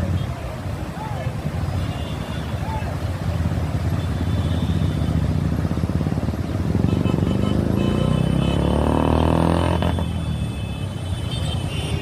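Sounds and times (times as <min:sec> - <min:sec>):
vehicle engine revving: 0:05.1 - 0:10.2.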